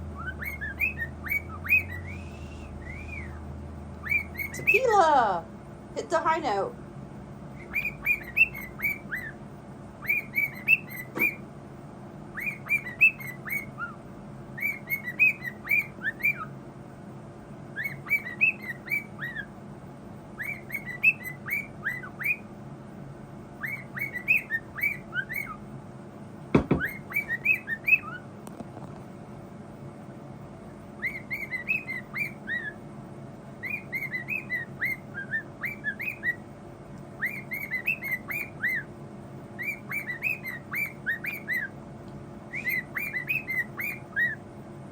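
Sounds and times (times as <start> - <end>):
bird whistling chirps: 0.0 - 3.4, 4.0 - 5.0, 7.5 - 9.4, 10.0 - 11.4, 12.3 - 16.6, 17.7 - 19.5, 20.3 - 22.5, 23.6 - 25.6, 26.6 - 28.3, 31.0 - 32.8, 33.6 - 36.4, 37.2 - 38.9, 39.6 - 41.8, 42.5 - 44.4
sharp knock: 26.6 - 26.9.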